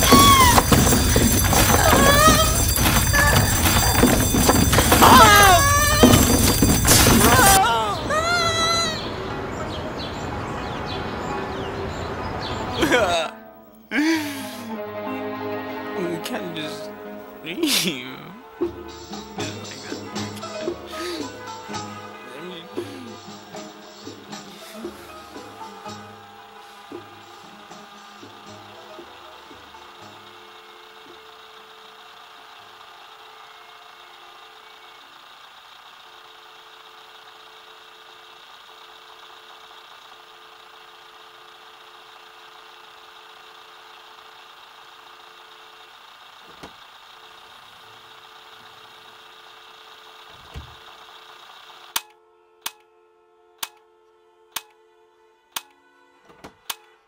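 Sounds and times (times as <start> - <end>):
click: 51.9 - 52.9, 53.6 - 53.8, 54.5 - 54.8, 55.6 - 55.8, 56.6 - 56.9.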